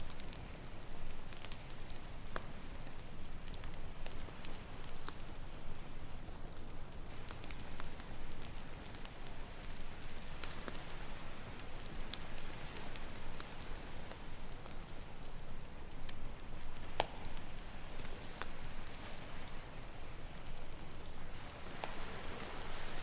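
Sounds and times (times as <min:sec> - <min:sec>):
campfire crackling and popping: 0:00.0 - 0:23.0
ocean waves: 0:06.9 - 0:23.0.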